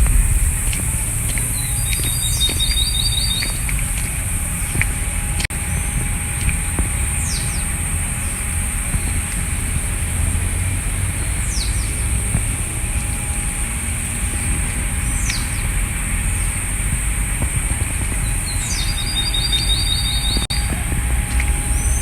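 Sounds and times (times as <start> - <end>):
bird trill: 0.0 - 4.7, 18.2 - 22.0
constant high hiss: 0.0 - 22.0
low rumble: 0.0 - 22.0.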